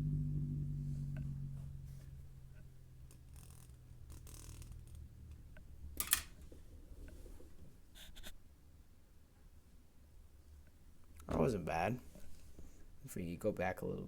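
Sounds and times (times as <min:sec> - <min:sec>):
low bass test tone: 0:00.0 - 0:05.9.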